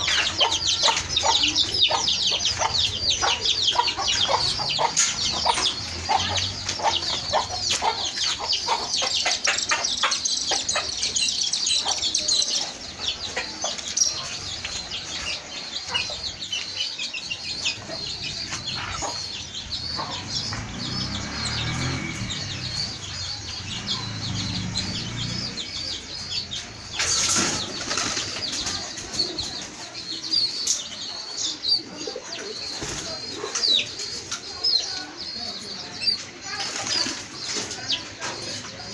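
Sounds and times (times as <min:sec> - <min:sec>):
high chirping: 0:00.0 - 0:14.3, 0:15.3 - 0:27.9
pigeons cooing: 0:00.0 - 0:16.4, 0:17.2 - 0:35.6.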